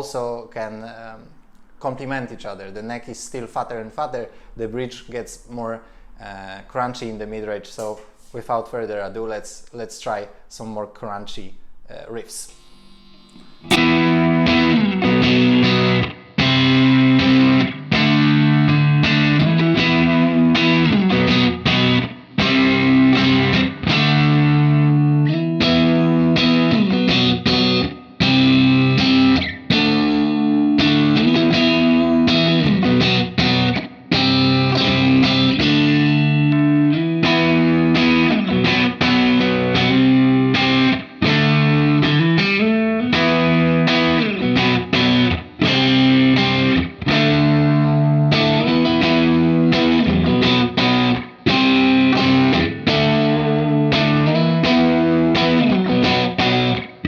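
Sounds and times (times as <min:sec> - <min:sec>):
overdriven electric guitar riff: 0:12.5 - 0:57.0.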